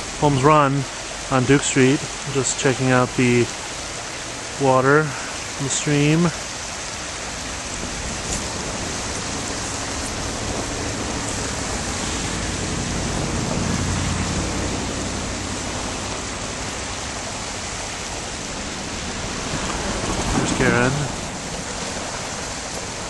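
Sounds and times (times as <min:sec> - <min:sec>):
stream rushing: 0:00.0 - 0:23.0
low rumble: 0:07.7 - 0:22.8.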